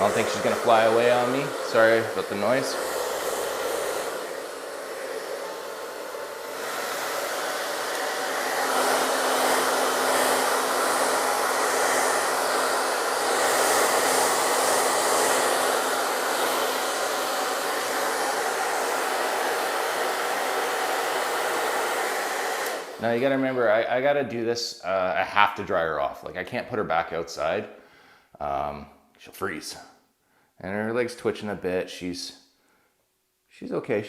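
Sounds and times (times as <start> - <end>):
hair dryer blowing: 0.0 - 23.6.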